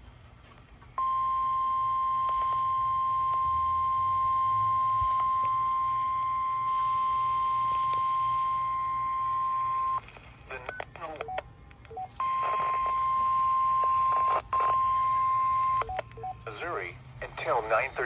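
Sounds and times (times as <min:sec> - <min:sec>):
steady single-pitch alarm tone: 0:01.0 - 0:10.0, 0:12.1 - 0:16.4.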